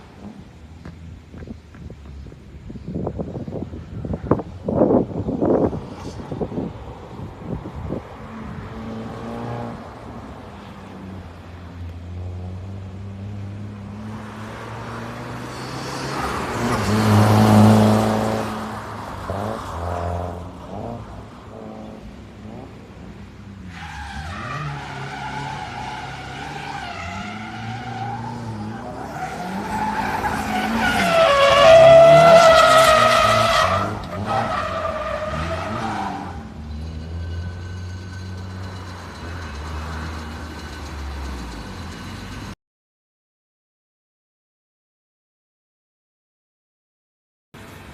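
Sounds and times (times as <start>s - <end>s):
tyres squealing: 23.7s - 42.2s.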